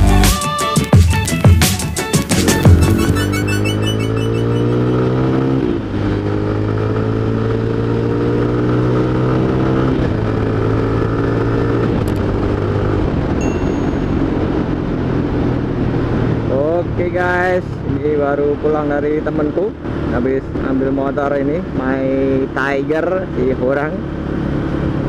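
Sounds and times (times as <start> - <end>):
motorcycle engine accelerating: 1.5 - 18.0, 19.1 - 25.0.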